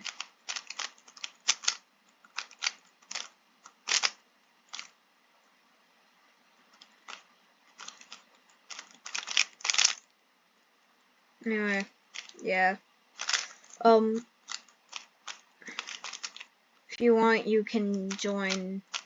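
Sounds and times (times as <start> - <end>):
puzzle cube clicking: 0.0 - 5.0, 6.8 - 10.1, 12.2 - 12.4, 13.2 - 16.5, 17.9 - 19.0.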